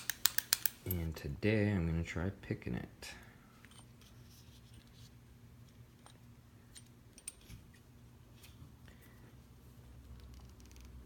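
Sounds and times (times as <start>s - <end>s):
metallic clicks of padlock: 0.0s - 1.0s
low steady hum: 0.0s - 11.0s.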